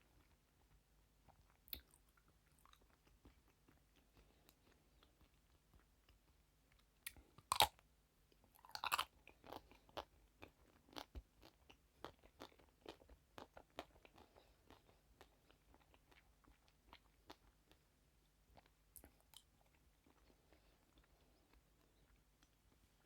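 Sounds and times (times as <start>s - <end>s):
chewing with small crunches: 0.0s - 23.0s
crunchy bites: 7.1s - 7.8s, 8.6s - 9.6s.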